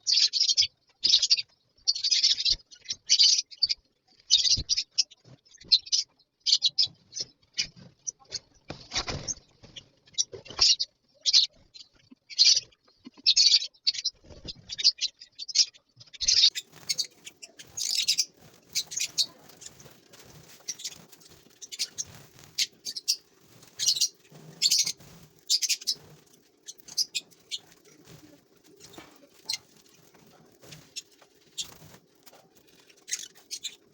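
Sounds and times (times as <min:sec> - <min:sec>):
lovebirds chirping shrilly: 0:16.2 - 0:33.9.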